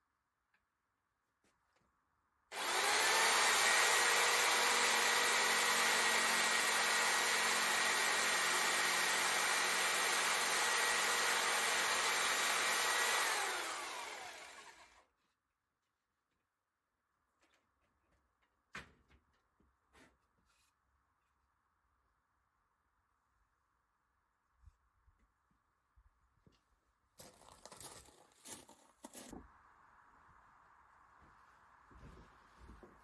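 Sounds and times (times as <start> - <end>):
electric motor with rushing air: 2.5 - 14.9.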